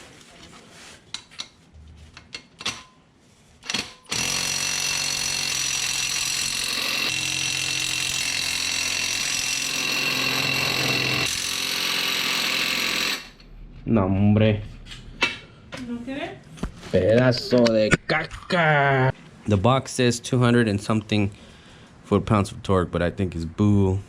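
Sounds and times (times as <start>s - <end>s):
impact wrench hammering: 3.7s - 13.5s.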